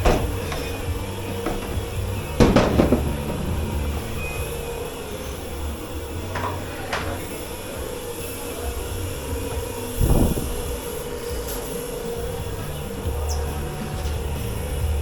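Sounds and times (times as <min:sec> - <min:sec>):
dishware clattering: 0:00.0 - 0:05.5
kitchen machinery hum: 0:00.0 - 0:15.0.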